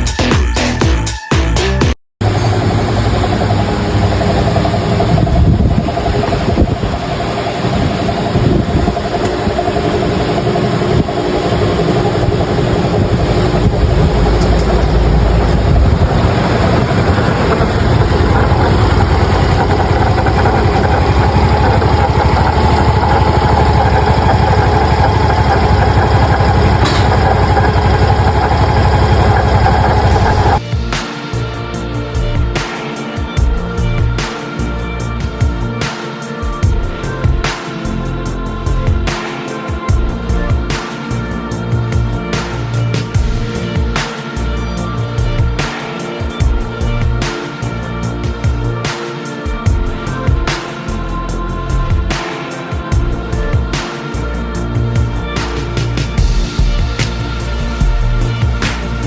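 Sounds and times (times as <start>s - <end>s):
scooter engine running: 2.2s - 30.6s
transmission noise: 2.2s - 30.6s.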